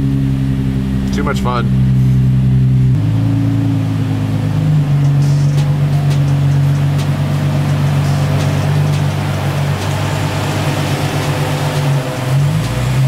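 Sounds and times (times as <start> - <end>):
car engine running: 0.0 - 13.0
music beat: 4.2 - 13.0.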